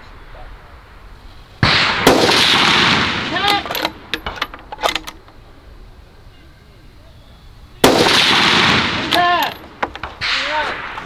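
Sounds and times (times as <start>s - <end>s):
rifle shot with long echo: 0.4s - 5.1s, 7.8s - 11.0s.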